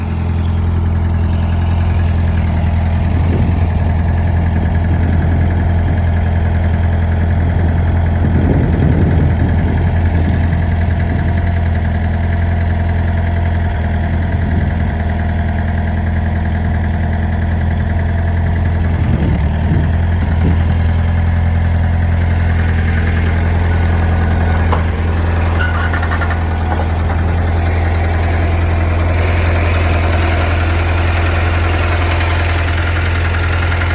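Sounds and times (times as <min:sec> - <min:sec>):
engine idling with a knock: 0:18.7 - 0:33.9.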